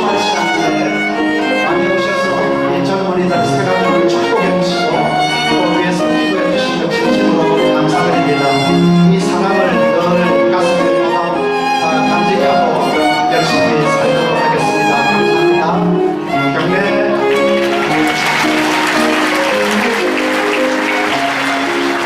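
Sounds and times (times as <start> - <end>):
string ensemble playing: 0.0 - 22.0
applause: 17.3 - 22.0.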